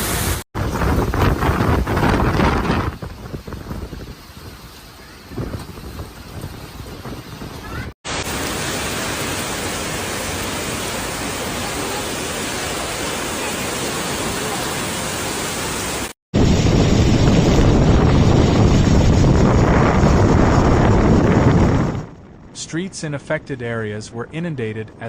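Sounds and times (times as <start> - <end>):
heavy wind-driven rain: 0.0 - 25.0
wind buffeting microphone: 0.6 - 8.0, 16.3 - 25.0.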